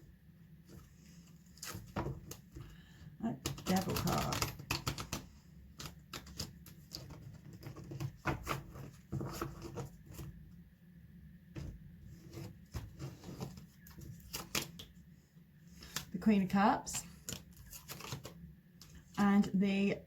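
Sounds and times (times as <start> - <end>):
cards being shuffled: 3.4 - 10.2, 12.3 - 14.9, 15.7 - 16.2, 17.0 - 19.1.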